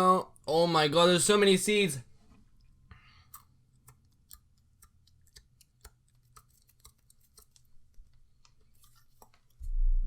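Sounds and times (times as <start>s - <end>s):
low steady hum: 9.6s - 10.0s.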